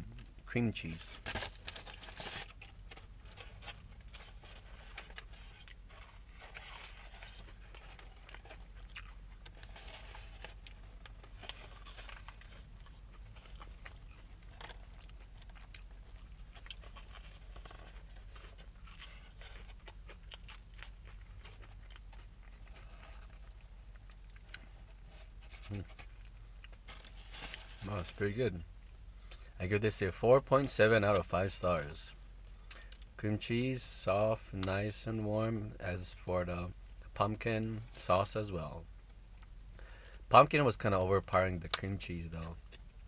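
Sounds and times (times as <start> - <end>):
person chewing crunchy food: 1.5 - 27.7.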